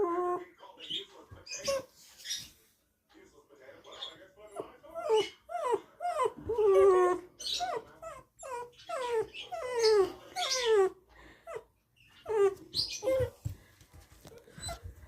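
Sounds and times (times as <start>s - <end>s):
dog whining: 0.0s - 0.5s, 1.6s - 1.9s, 4.5s - 13.4s, 14.4s - 15.0s.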